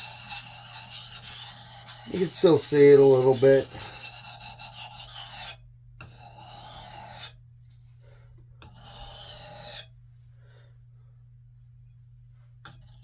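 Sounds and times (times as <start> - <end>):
sharpening stone rubbing axe edge: 0.0 - 7.4, 8.6 - 9.8.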